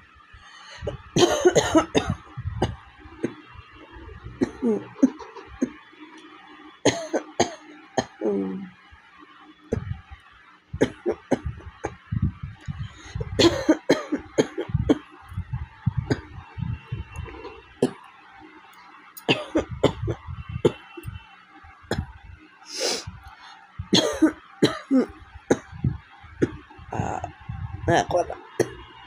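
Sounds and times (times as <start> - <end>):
woman coughing: 1.2 - 2.2, 13.4 - 15.0, 19.3 - 20.2, 23.9 - 25.7.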